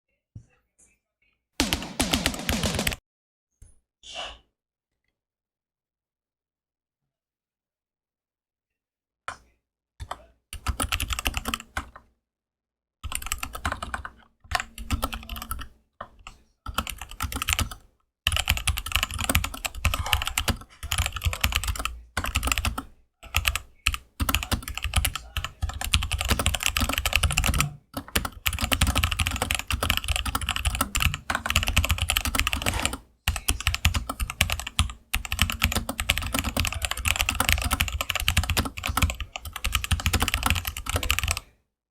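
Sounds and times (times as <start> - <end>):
typing on mechanical keyboard: 1.6 - 3.0, 10.0 - 12.0, 13.0 - 41.4.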